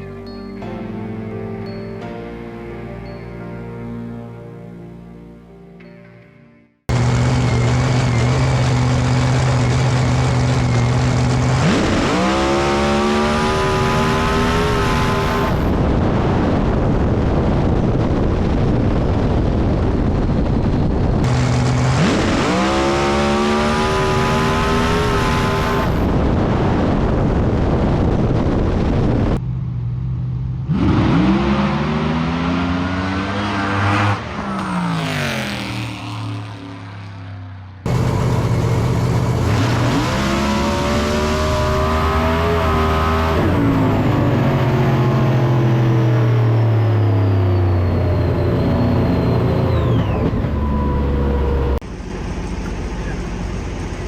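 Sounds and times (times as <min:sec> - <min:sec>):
drag car engine revving: 0:06.9 - 0:15.9, 0:21.2 - 0:26.2, 0:30.5 - 0:54.0.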